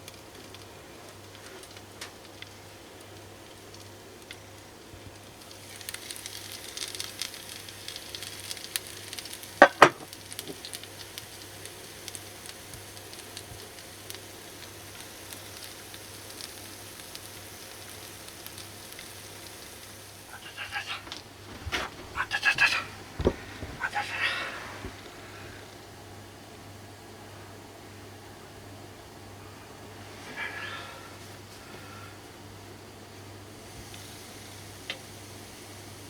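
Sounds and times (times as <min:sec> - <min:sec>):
fish sizzling in a grill pan: 0:00.0 - 0:21.4, 0:30.2 - 0:32.2, 0:33.2 - 0:36.0.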